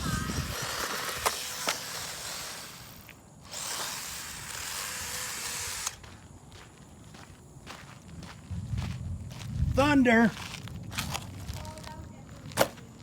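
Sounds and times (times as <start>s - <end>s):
toy truck electric motor whirring: 0.0s - 6.0s
wheels spinning in loose dirt: 0.0s - 6.3s.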